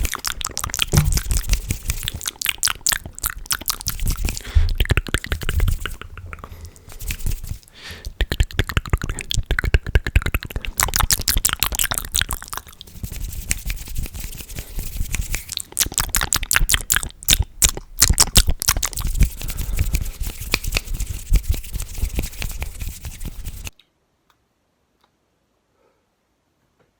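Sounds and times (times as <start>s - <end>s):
crackling wet clicks: 0.0s - 6.9s, 8.1s - 12.9s, 15.4s - 19.1s.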